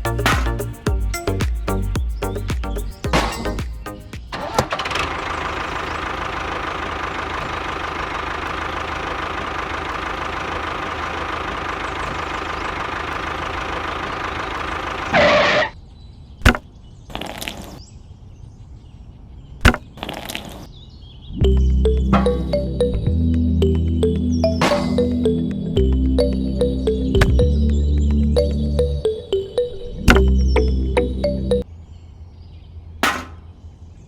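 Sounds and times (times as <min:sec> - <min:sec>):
handling noises: 0:33.0 - 0:33.6.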